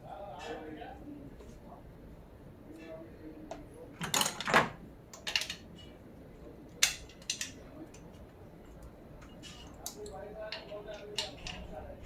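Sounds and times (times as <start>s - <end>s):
metal tools and parts clinking: 5.2s - 5.9s.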